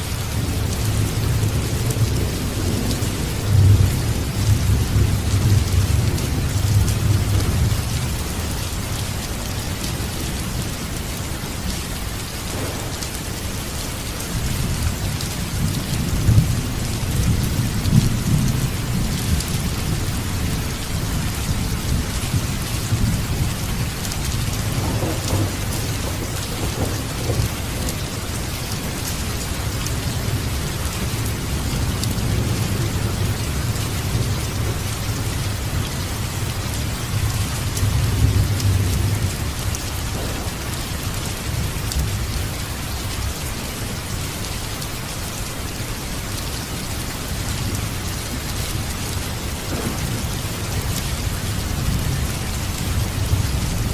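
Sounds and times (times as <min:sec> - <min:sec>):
steady rain: 0:00.0 - 0:53.9
low rolling thunder: 0:11.6 - 0:44.0, 0:49.2 - 0:53.9.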